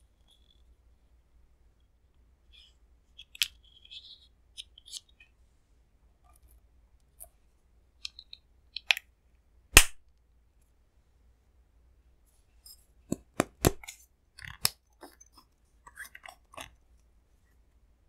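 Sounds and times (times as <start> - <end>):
plastic tubes clicking and tapping: 8.0 - 9.1, 13.1 - 16.8.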